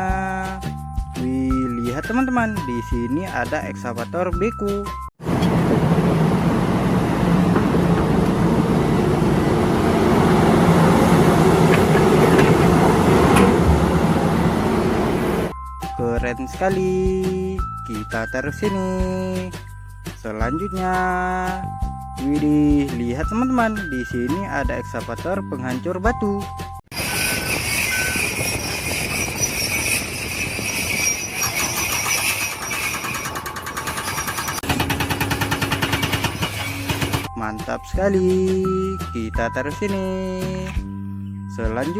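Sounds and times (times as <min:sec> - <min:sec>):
excavator engine rumble: 0:05.2 - 0:15.6, 0:26.9 - 0:37.4
fast rattle: 0:26.9 - 0:37.3.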